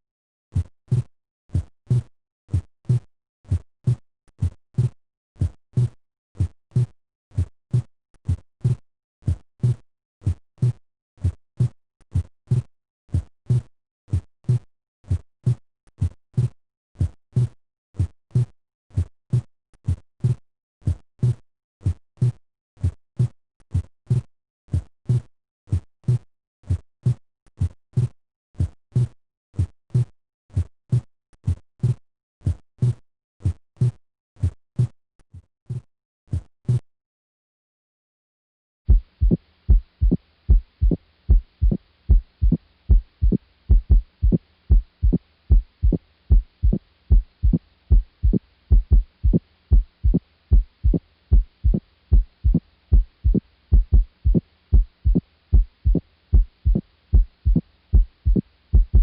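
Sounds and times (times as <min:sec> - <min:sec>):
heartbeat thumps: 0:38.9 - 0:59.0.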